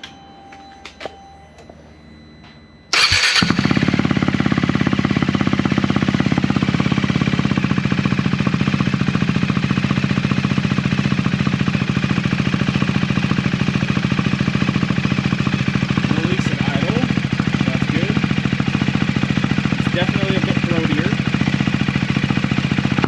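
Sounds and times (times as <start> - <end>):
electric starter: 2.9 - 5.2
motorcycle engine idling: 2.9 - 23.0.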